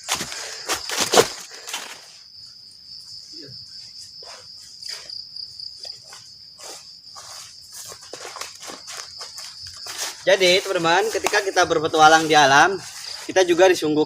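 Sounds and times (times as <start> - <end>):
crickets chirring: 0.0 - 14.0
rustling steps: 3.8 - 14.0.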